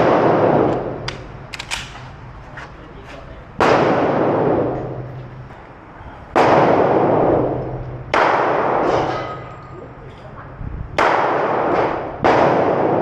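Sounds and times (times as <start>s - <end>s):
pistol shots with echo: 0.0s - 2.0s, 3.6s - 5.1s, 6.3s - 9.4s, 11.0s - 13.0s.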